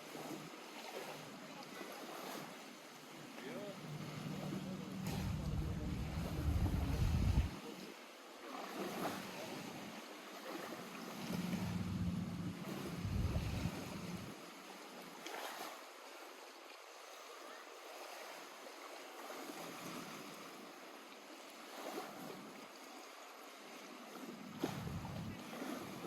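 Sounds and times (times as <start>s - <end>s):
water lapping at shore: 0.0s - 26.0s
wind rumble on microphone: 5.0s - 7.6s, 11.2s - 14.3s, 24.6s - 26.0s.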